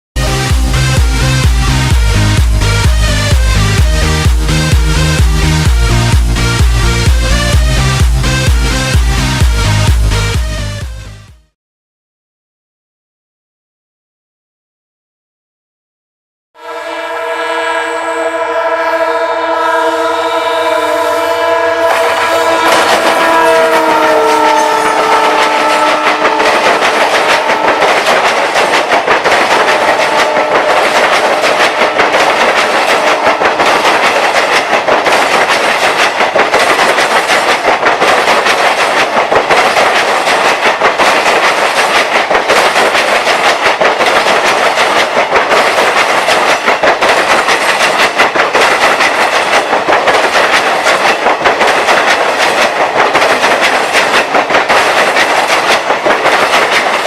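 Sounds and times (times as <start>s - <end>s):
locomotive horn: 16.6s - 28.3s, 29.6s - 33.9s
train coaches rushing past: 16.7s - 57.0s
wheels clacking over rail joints: 21.9s - 57.0s.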